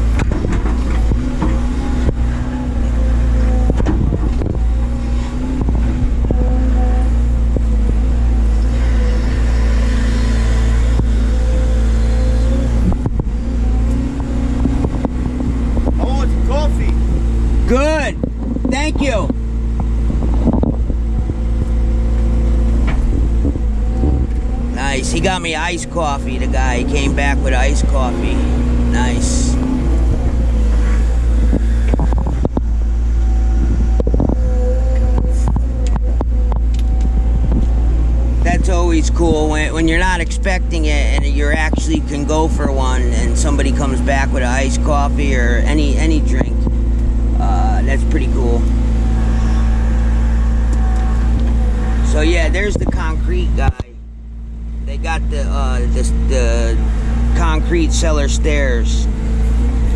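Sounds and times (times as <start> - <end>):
sharp clicks and knocks: 0.0 - 2.3, 3.6 - 4.6, 18.2 - 24.5, 31.4 - 32.7, 33.9 - 37.8
excavator diesel engine running: 0.0 - 59.9
hydraulic whine: 0.0 - 59.9.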